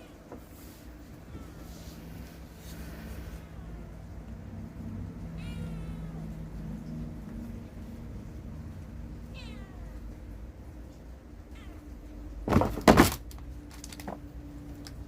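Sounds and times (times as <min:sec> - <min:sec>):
cat meowing: 0:05.3 - 0:06.4, 0:09.2 - 0:10.1, 0:11.4 - 0:12.0
loud thump with clatter: 0:12.4 - 0:13.3.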